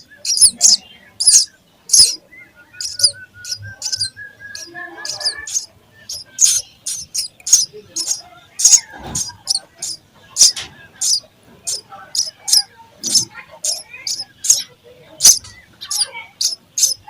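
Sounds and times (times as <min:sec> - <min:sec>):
sparrows chirping: 0:00.0 - 0:17.0
faint thin whistle: 0:02.4 - 0:05.7.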